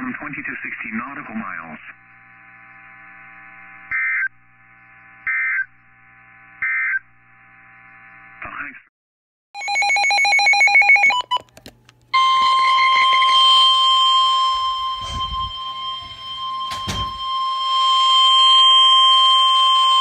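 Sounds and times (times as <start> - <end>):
steady single-pitched alarm tone: 12.2 - 20.0
warbling digital data tones: 12.2 - 20.0.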